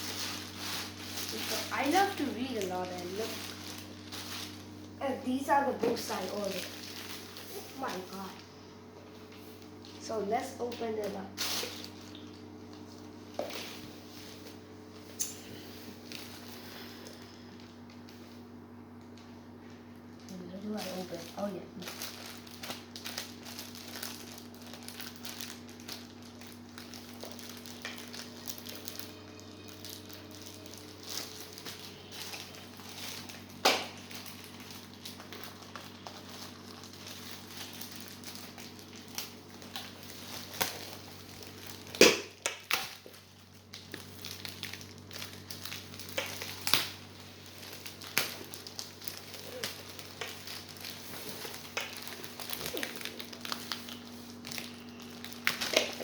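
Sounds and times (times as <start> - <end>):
packaging bag crinkling: 0.0 - 8.4, 9.6 - 56.0
steady low hum: 0.0 - 56.0
small clicks and snaps: 43.7 - 47.0.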